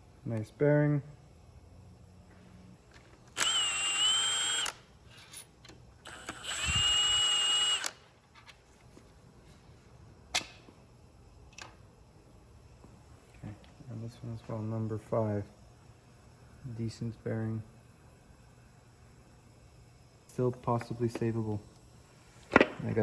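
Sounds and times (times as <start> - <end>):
cordless power tool whining: 3.3 - 5.4, 6.0 - 8.1.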